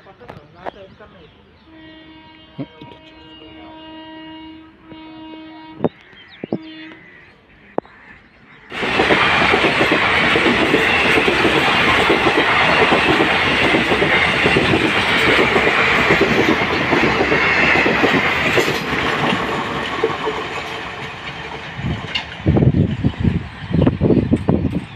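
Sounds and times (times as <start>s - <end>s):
train wheels clattering on rails: 8.7s - 24.9s.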